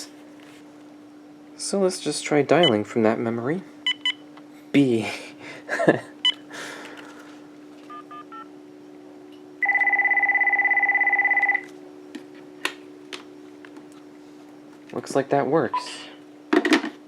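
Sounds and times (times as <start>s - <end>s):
steady low hum: 0.0s - 17.0s
electronic telephone ringer warbling: 9.6s - 11.7s.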